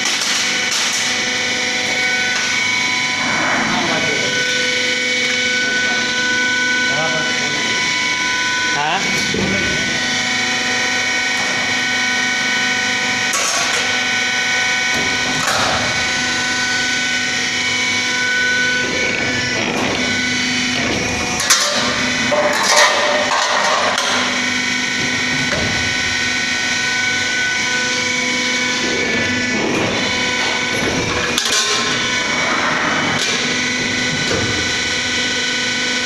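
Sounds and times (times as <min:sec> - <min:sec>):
bending machine whine: 0:00.0 - 0:36.0
metal clanks and knocks: 0:20.9 - 0:24.3, 0:30.8 - 0:32.1.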